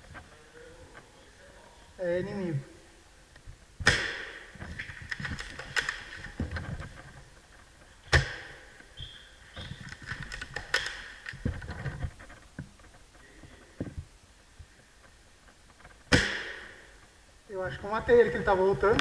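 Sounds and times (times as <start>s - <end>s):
airsoft gun firing: 3.8s - 6.2s, 8.1s - 8.6s, 16.1s - 16.9s
rustling: 4.4s - 18.0s.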